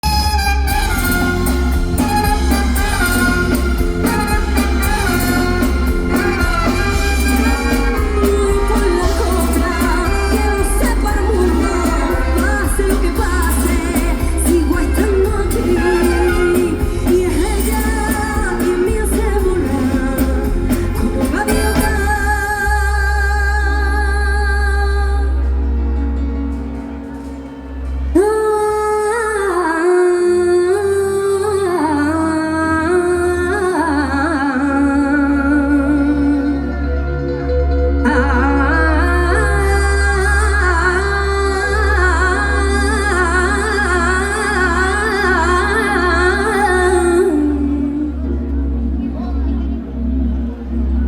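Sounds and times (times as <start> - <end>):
person singing: 0.0 - 25.8
amplified pop dance band: 0.0 - 37.1
held chords over bass: 0.0 - 51.0.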